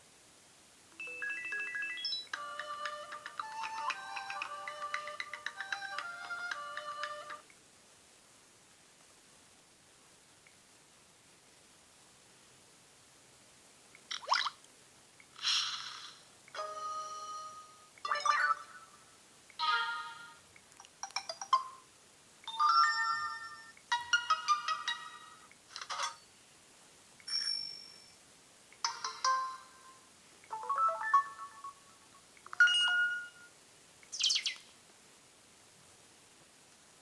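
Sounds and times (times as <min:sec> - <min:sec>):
phone chimes and jingles: 0:01.0 - 0:06.0, 0:27.3 - 0:28.2.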